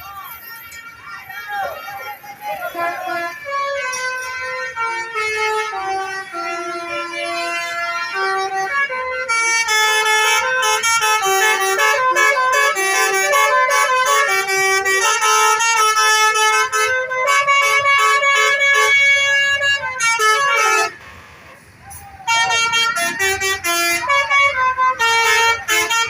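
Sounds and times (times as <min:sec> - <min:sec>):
bus horns playing melodies: 0:00.1 - 0:26.0.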